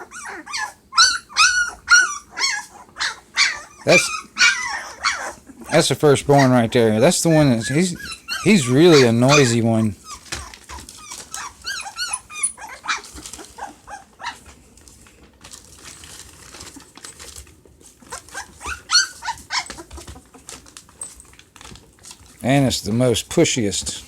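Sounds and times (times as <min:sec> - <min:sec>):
puppies whimpering and squeaking: 0:00.0 - 0:14.6, 0:17.9 - 0:21.3.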